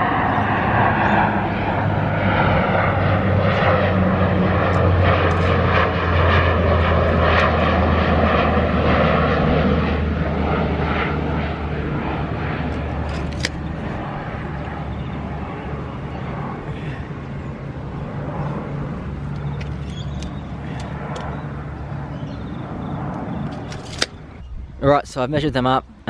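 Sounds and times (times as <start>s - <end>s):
engine drone: 0.0s - 26.0s.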